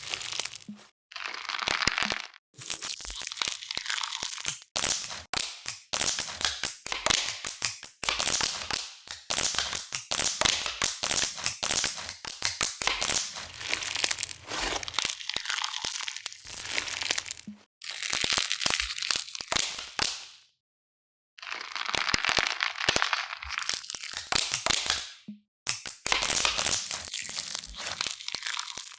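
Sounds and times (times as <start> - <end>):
dense crinkling and crunching crackles: 0.0 - 4.4, 11.3 - 19.4, 26.1 - 28.9.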